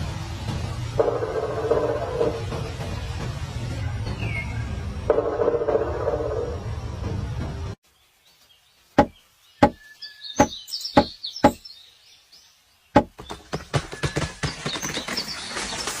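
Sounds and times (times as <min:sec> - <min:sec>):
woodpecker pecking wood: 0:09.0 - 0:09.8, 0:10.4 - 0:11.6, 0:13.0 - 0:14.9.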